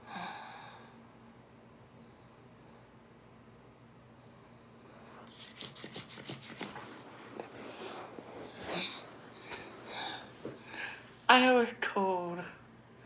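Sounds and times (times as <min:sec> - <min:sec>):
fingernails scratching skin: 0:05.3 - 0:09.7.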